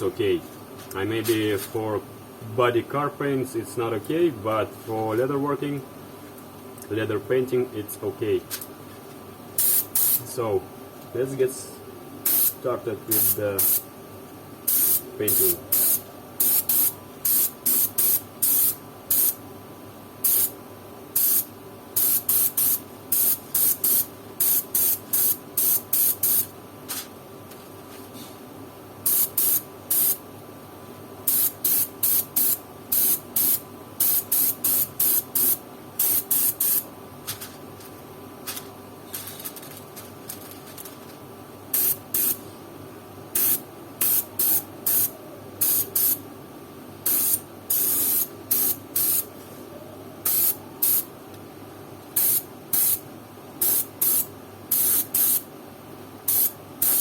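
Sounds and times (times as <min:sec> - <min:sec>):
steady low hum: 0:00.0 - 0:54.8
spray gun hissing in bursts: 0:09.6 - 0:10.2, 0:12.2 - 0:13.8, 0:14.7 - 0:19.4, 0:20.2 - 0:20.5, 0:21.2 - 0:26.5, 0:29.1 - 0:30.2, 0:31.3 - 0:36.9, 0:41.7 - 0:42.4, 0:43.4 - 0:46.2, 0:47.0 - 0:49.3, 0:50.3 - 0:51.1, 0:52.2 - 0:53.0, 0:53.6 - 0:55.5, 0:56.3 - 0:57.0.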